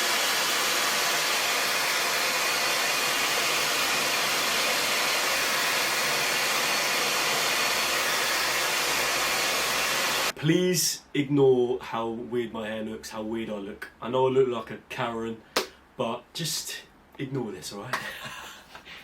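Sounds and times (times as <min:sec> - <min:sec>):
hair dryer blowing: 0:00.0 - 0:10.3.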